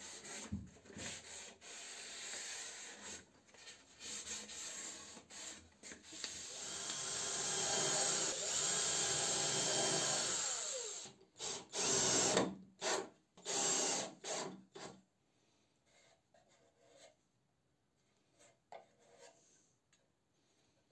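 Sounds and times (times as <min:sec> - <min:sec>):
power tool working wood: 0:06.6 - 0:11.0.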